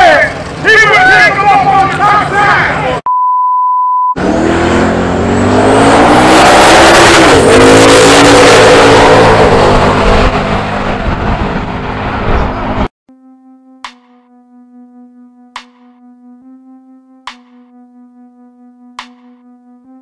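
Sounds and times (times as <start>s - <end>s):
drag cars accelerating: 4.2s - 12.9s.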